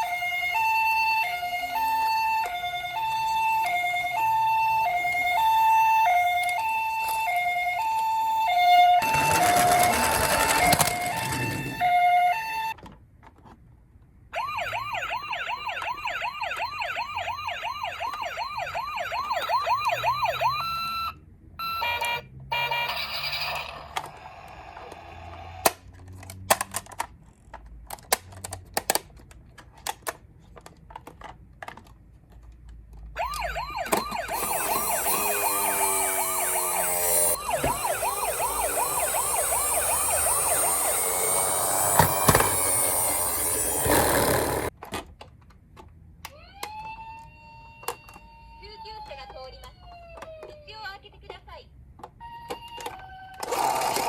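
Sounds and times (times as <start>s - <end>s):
toy siren two-note tone: 0.0s - 12.7s, 14.4s - 23.3s, 33.2s - 44.1s, 52.2s - 53.6s
toy siren wail: 0.0s - 12.8s, 14.4s - 25.6s, 33.2s - 44.7s, 46.3s - 50.7s, 52.2s - 54.0s.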